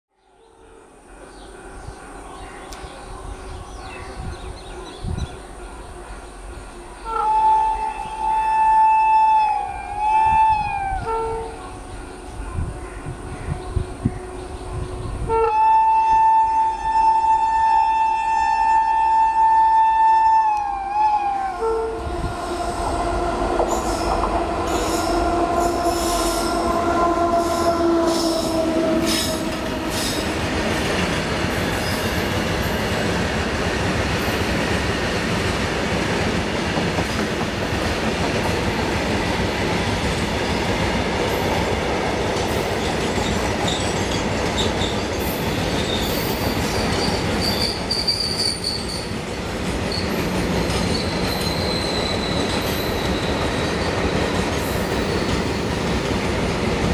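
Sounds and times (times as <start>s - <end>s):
locomotive hum: 13.6s - 34.9s
high thin wheel squeal: 46.0s - 49.1s, 50.8s - 53.8s.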